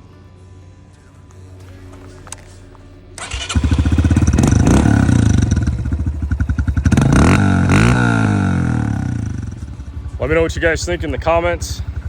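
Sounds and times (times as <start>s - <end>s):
dirt bike engine revving: 3.2s - 12.0s.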